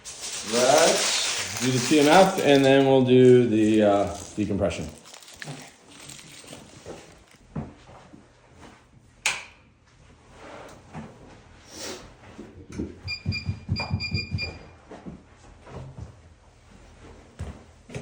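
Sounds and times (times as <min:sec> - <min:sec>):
handling sounds: 0:00.0 - 0:07.5
short electronic beeps: 0:13.1 - 0:14.6.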